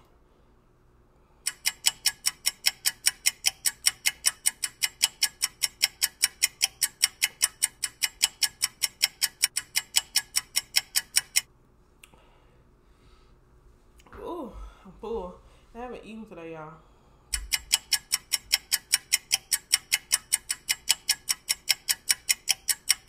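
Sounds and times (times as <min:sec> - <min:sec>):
rapid clock-like ticks: 0:01.4 - 0:11.5, 0:17.3 - 0:23.0.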